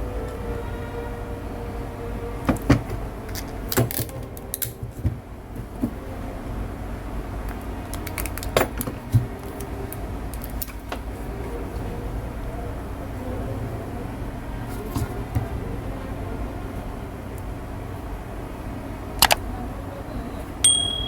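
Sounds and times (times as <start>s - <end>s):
sharp clicks and light knocks: 19.2s - 19.4s.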